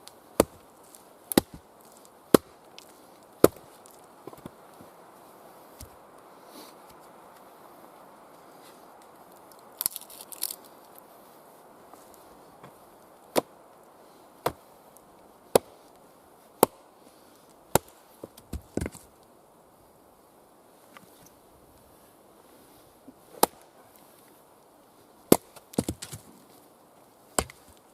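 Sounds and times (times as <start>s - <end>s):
axe chopping wood: 0.4s - 0.6s, 1.3s - 1.6s, 2.3s - 2.5s, 3.4s - 3.7s, 13.3s - 13.5s, 14.4s - 14.6s, 15.5s - 15.8s, 16.6s - 16.8s, 17.7s - 19.0s, 23.4s - 23.6s, 25.3s - 26.2s, 27.4s - 27.7s
wood knocks and cracks: 25.3s - 26.3s.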